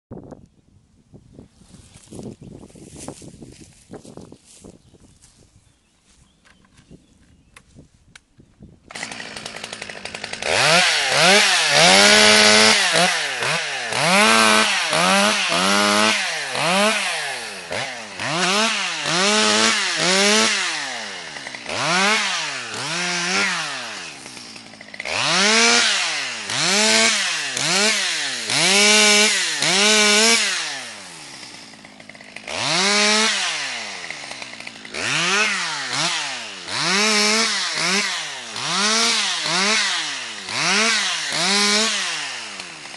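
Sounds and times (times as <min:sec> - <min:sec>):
chainsaw revving: 0:08.9 - 0:42.9.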